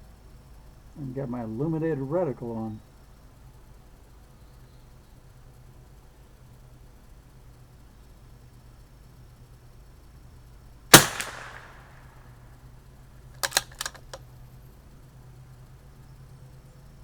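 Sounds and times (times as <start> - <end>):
rifle bolt clicks: 10.9 - 12.0, 13.4 - 14.2
rifle shot: 10.9 - 12.2, 13.4 - 14.2.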